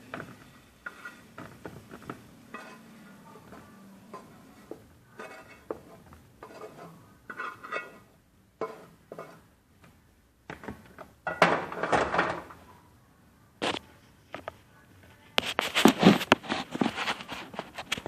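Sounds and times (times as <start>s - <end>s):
utensils clinking against pans: 0.0s - 9.5s.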